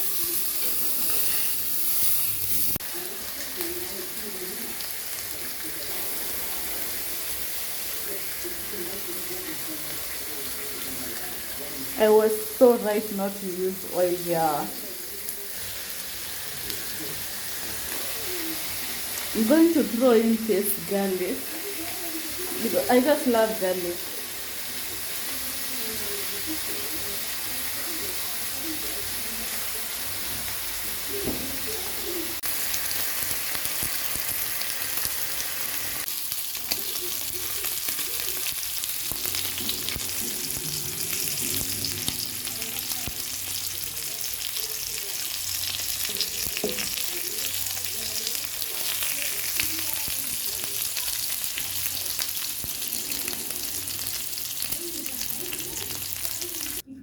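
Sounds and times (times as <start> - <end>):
food sizzling in a pan: 0.0 - 56.9.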